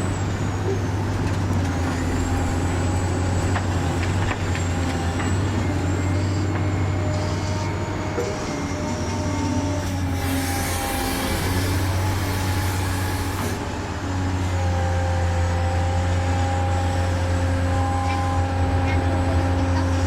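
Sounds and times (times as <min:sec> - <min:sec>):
toy truck motor whine: 0:10.0 - 0:13.6.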